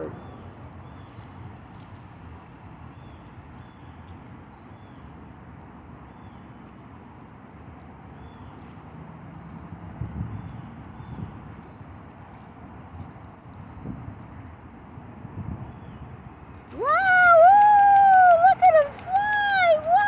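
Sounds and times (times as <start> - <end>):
low outdoor rumble: 0.0 - 3.0.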